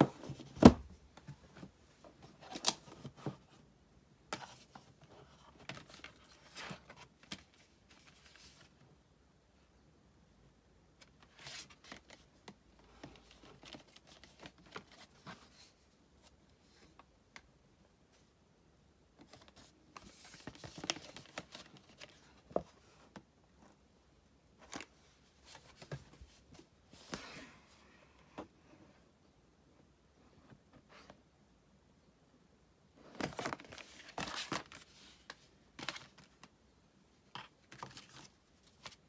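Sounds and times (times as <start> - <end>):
paper and packaging rustling: 12.9 - 15.8, 19.2 - 22.8, 33.1 - 36.5, 37.4 - 39.0.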